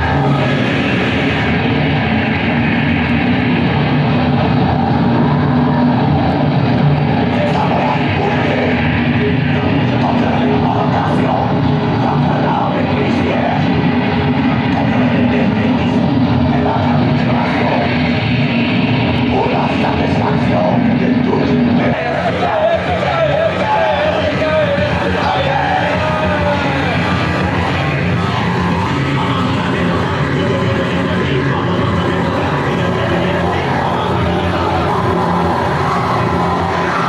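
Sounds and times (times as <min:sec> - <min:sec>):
loud rock music with guitar: 0:00.0 - 0:37.0.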